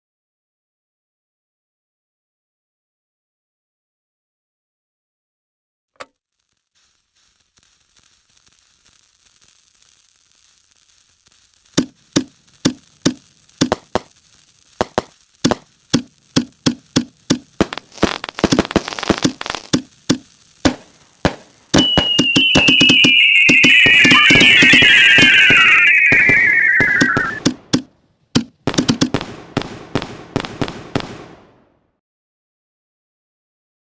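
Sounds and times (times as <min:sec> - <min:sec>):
faint hiss: 0:06.0 - 0:27.8
firework tubes launching thumps: 0:10.8 - 0:31.5
firework whistle falling in pitch: 0:21.8 - 0:27.5.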